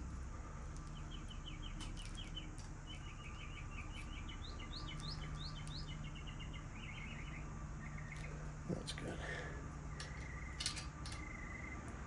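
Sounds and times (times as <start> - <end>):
low steady hum: 0.0 - 12.0
small bird chirping: 0.8 - 9.0, 9.8 - 12.0.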